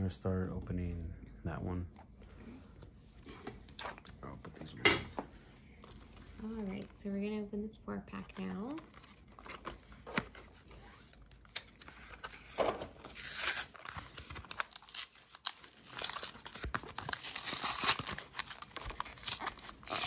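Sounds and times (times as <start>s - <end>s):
card packaging tearing and crinkling: 8.4s - 20.0s.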